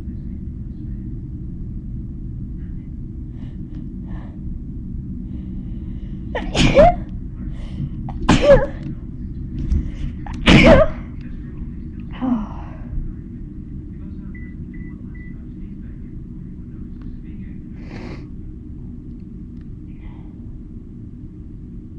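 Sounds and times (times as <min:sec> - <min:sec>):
low rumble: 0:00.0 - 0:21.9
woman sneezing: 0:06.4 - 0:07.0, 0:08.3 - 0:08.8, 0:10.4 - 0:11.0.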